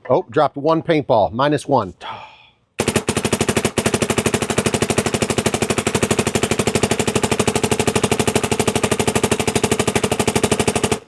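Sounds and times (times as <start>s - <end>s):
paintball marker rapid firing: 2.8s - 11.0s.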